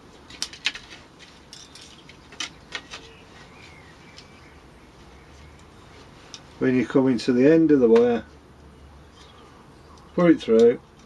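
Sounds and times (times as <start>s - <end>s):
wire clicking against canes: 0.2s - 3.2s, 6.3s - 6.5s, 9.9s - 11.0s.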